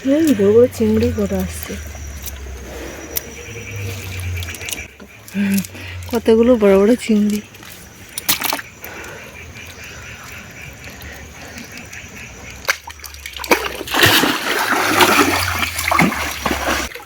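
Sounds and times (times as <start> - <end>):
river water splashing: 0.0 - 17.0.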